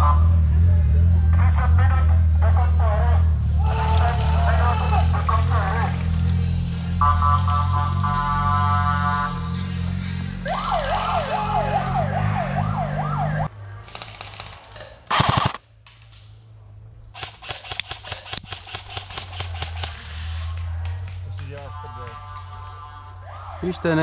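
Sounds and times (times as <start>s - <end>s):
airsoft guns firing: 3.6s - 8.3s, 10.5s - 11.7s, 13.8s - 16.2s, 17.1s - 23.8s
wailing siren-like music: 6.8s - 13.5s, 20.6s - 24.0s.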